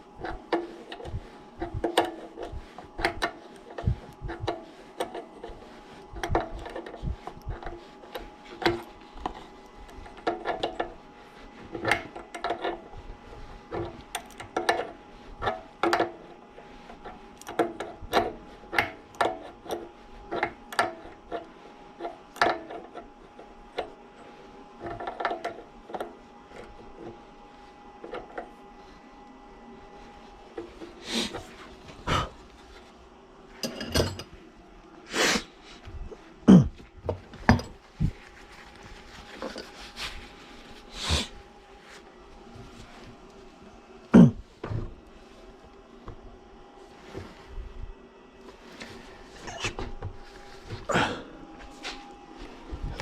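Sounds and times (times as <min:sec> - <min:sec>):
tools and metal parts clinking: 0:33.6 - 0:34.4.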